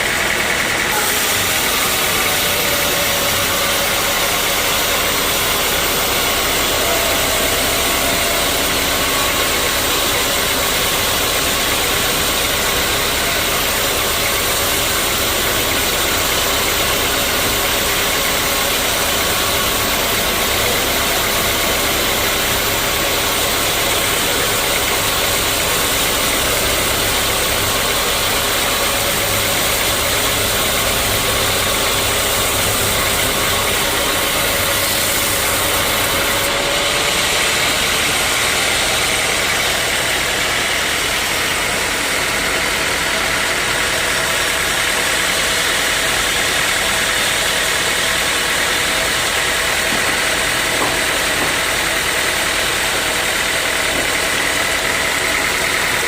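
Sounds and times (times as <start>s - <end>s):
sawmill saw and engine drone: 0.0s - 56.0s.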